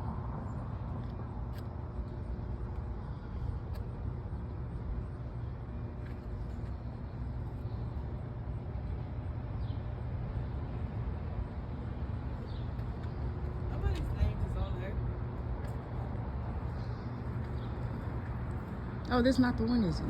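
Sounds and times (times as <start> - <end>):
low outdoor rumble: 0.0 - 20.0.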